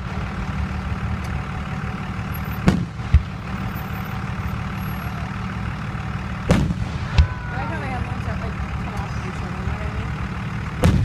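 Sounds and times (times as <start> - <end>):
steady low rumble: 0.0 - 11.0
firework crack: 2.5 - 3.8, 6.4 - 7.9, 10.7 - 11.0
dull firework boom: 2.6 - 3.4, 6.5 - 7.5, 10.8 - 11.0.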